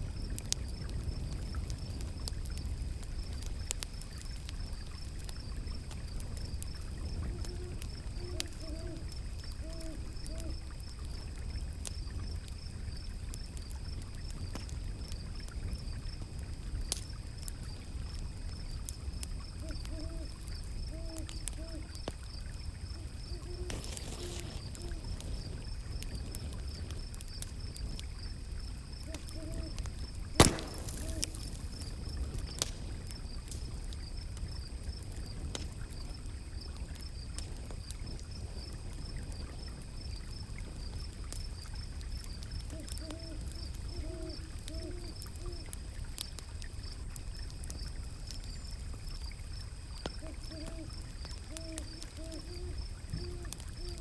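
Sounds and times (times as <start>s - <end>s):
wood fire crackling and popping: 0.0s - 54.0s
soft low hooting calls: 7.2s - 10.6s, 19.6s - 22.0s, 22.9s - 25.4s, 29.0s - 32.0s
high insect trill: 18.6s - 35.0s.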